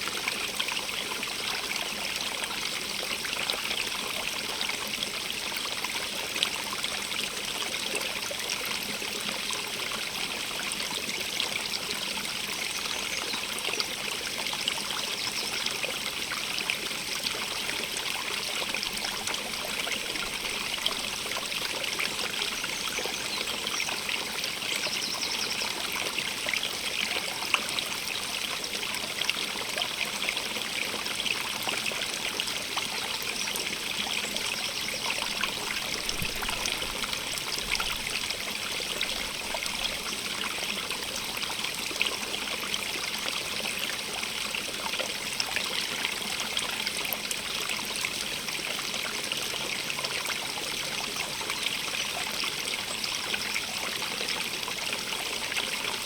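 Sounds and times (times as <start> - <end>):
stream water trickling: 0.0 - 56.0.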